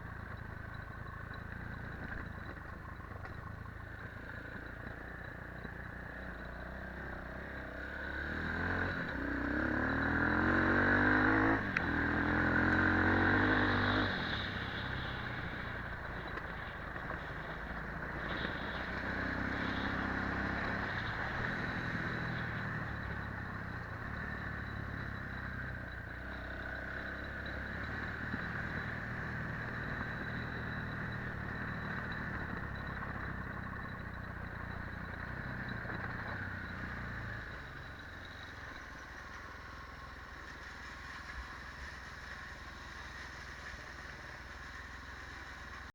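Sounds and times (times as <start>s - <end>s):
quad engine revving: 7.6s - 14.6s.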